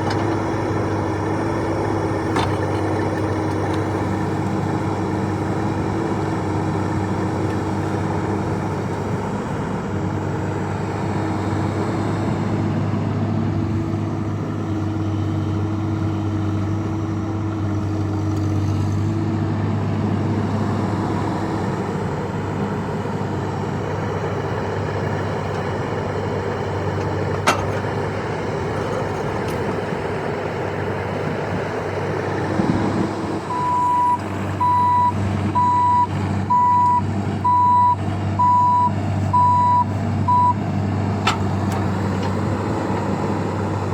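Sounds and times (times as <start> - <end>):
excavator diesel engine running: 0.0 - 43.9
travel alarm beeping: 33.5 - 40.6.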